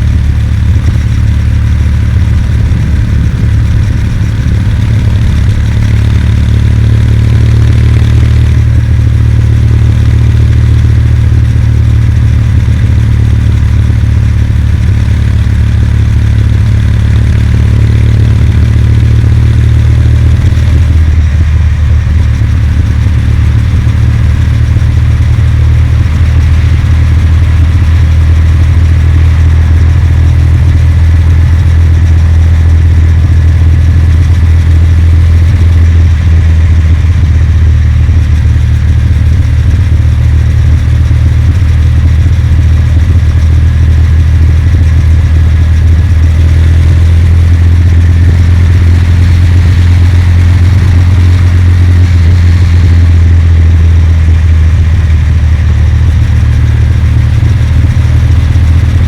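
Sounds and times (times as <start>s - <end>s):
wind rumble on microphone: 0.0s - 9.2s
motorcycle engine cruising: 0.0s - 59.0s.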